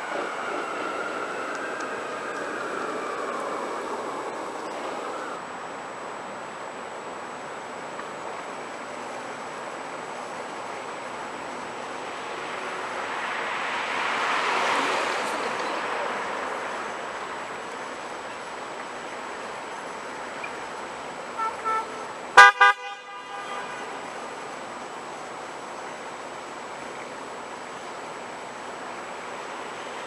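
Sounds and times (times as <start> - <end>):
road traffic: 0.0 - 30.0
vehicle passing: 12.0 - 17.5
car horns honking: 21.4 - 24.2.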